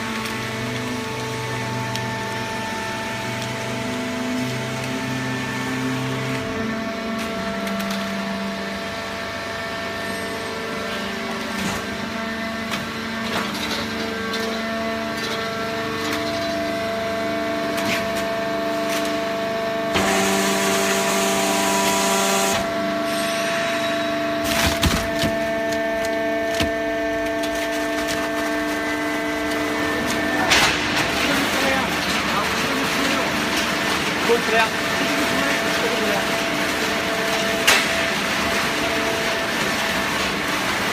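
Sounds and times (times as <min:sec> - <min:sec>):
cardboard crackling and snapping: 0:24.4 - 0:31.8.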